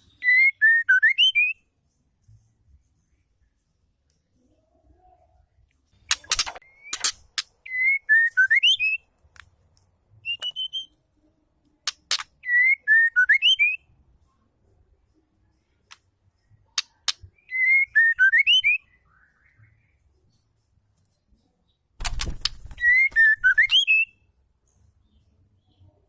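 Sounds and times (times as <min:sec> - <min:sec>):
bird calling with clicks and whistles: 0:00.0 - 0:01.7, 0:06.0 - 0:09.1, 0:10.2 - 0:11.0, 0:16.8 - 0:20.0, 0:22.0 - 0:24.2.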